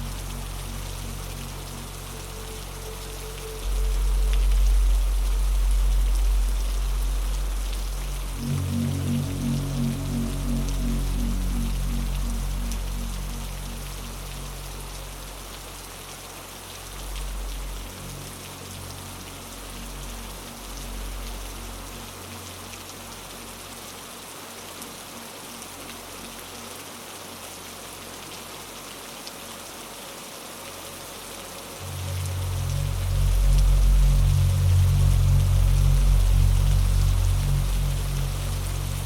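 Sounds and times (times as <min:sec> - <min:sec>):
low ambient drone: 0:00.0 - 0:23.7, 0:31.6 - 0:39.0
steady rain: 0:00.0 - 0:39.0.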